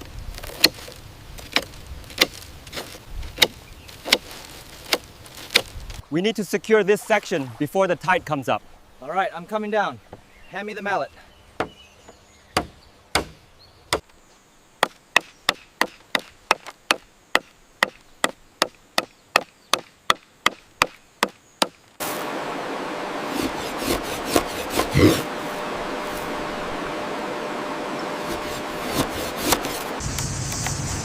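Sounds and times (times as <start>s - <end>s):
wooden mallet striking bamboo: 12.6s - 14.1s, 14.8s - 21.8s
steady noise: 22.0s - 31.0s.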